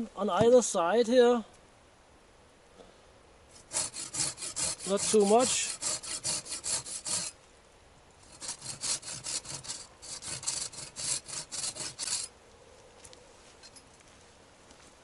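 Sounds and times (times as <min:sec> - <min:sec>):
hand saw cutting wood: 0:03.5 - 0:07.4, 0:08.2 - 0:12.3.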